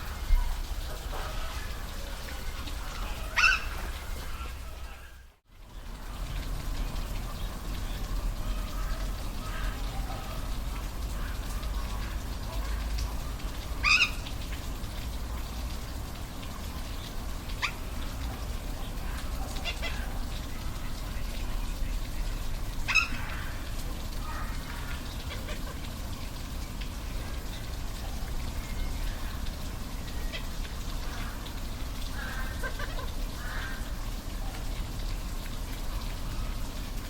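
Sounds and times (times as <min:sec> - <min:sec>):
high-pitched animal calls: 0:01.4 - 0:05.1, 0:13.8 - 0:14.2.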